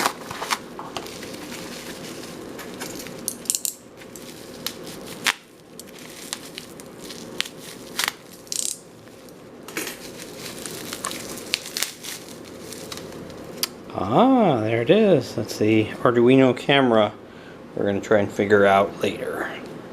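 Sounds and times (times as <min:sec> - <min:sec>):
plastic packaging crinkling: 0:00.0 - 0:13.7.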